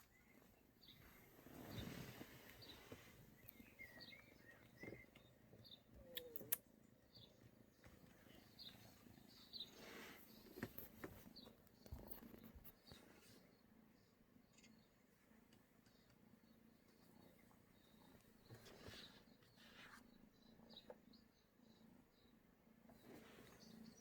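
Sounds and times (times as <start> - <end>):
small birds chirping: 0.0 - 24.0
sharp clicks: 6.0 - 6.7.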